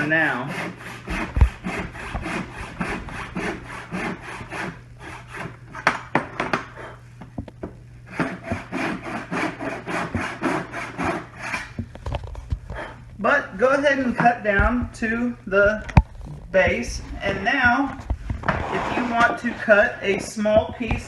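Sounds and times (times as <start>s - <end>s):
handsaw cutting wood: 0.0s - 5.9s, 8.1s - 11.8s, 18.5s - 20.0s.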